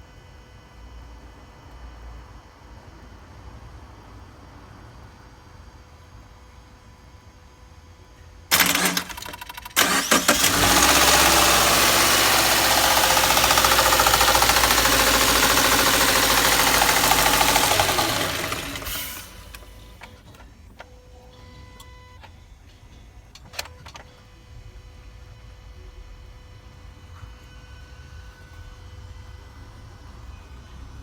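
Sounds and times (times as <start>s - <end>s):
engine running with knocking clatter: 8.5s - 20.3s
engine cranking: 8.5s - 20.4s.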